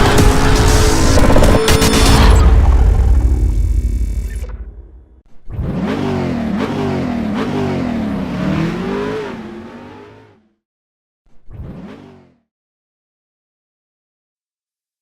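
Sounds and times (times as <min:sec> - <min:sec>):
music: 0:00.0 - 0:05.3
vehicle engine revving: 0:05.4 - 0:10.6.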